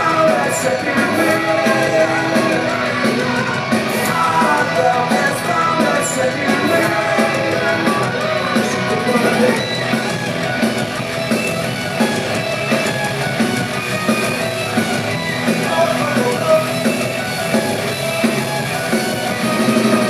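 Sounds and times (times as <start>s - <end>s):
rock band playing live: 0.0s - 20.0s.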